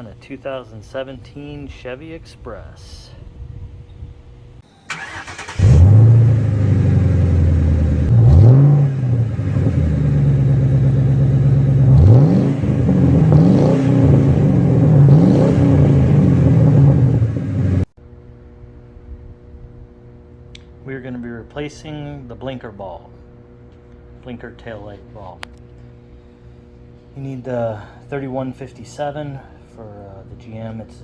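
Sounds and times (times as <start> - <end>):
vehicle engine revving: 5.0 - 17.9.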